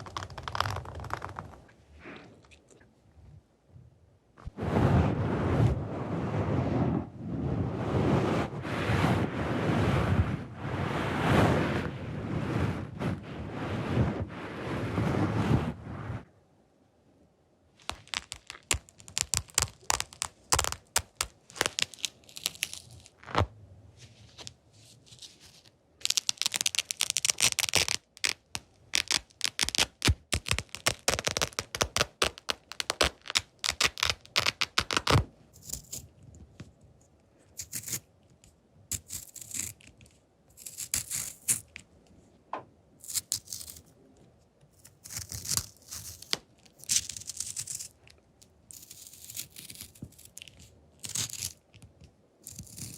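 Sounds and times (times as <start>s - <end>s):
scratching and crinkling: 0.0s - 2.8s, 17.8s - 36.9s, 44.7s - 52.9s.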